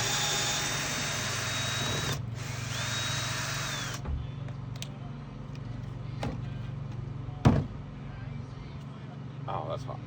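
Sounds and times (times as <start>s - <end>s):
power drill motor whine: 0.0s - 4.0s.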